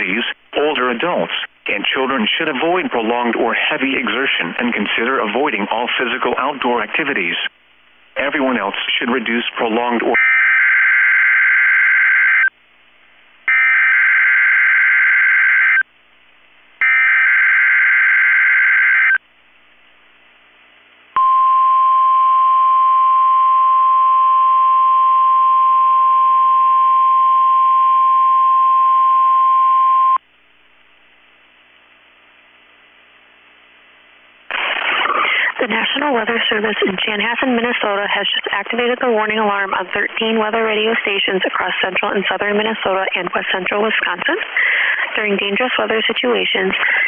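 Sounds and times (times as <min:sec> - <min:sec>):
steady loud alarm tone: 0:10.2 - 0:12.5, 0:13.5 - 0:15.8, 0:16.8 - 0:19.2.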